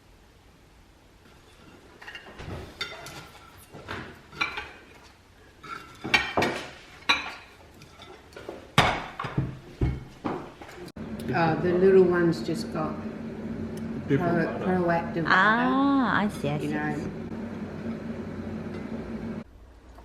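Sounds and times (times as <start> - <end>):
metal kitchenware and dishes clattering: 1.3 - 10.9.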